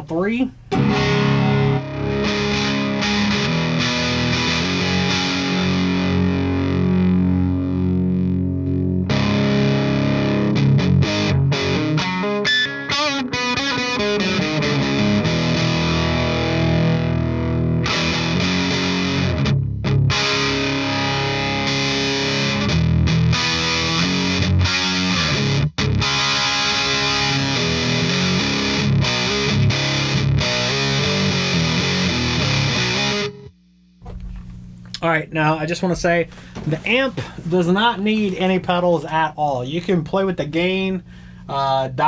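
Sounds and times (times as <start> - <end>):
distorted electric guitar: 0.7 - 34.8.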